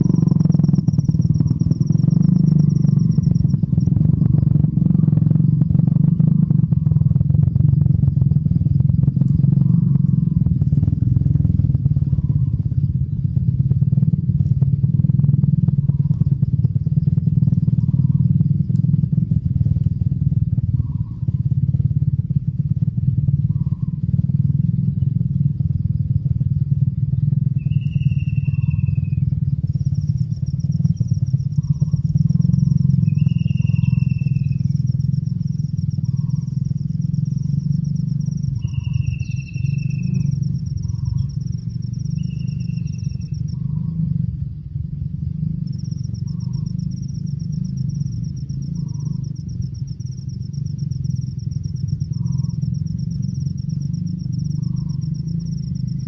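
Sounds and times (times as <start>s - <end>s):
steady low rumble: 0.0s - 56.0s
bird descending whistle: 27.6s - 29.3s, 31.6s - 34.8s, 38.3s - 43.9s.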